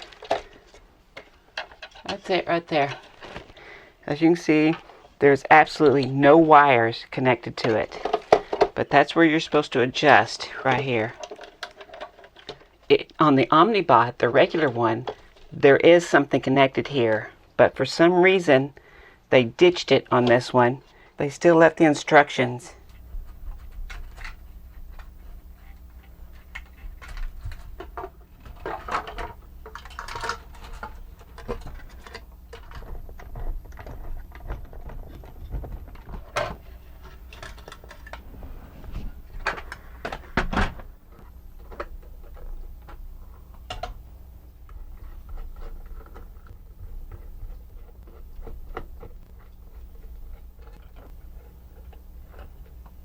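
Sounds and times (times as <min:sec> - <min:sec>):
steady low hum: 0:00.0 - 0:53.0
small hard objects clattering: 0:07.5 - 0:15.6, 0:22.9 - 0:38.3.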